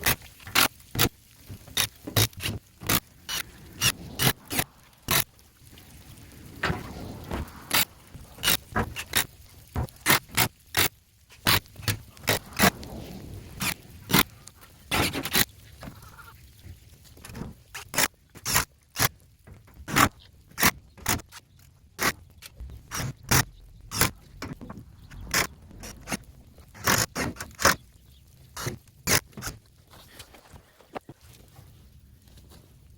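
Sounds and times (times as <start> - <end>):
sharp knocks and clicks: 19.4 - 27.8.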